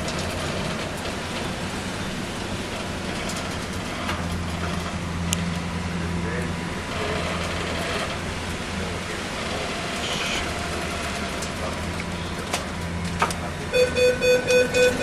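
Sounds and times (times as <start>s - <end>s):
rapid beeping: 13.7s - 15.0s.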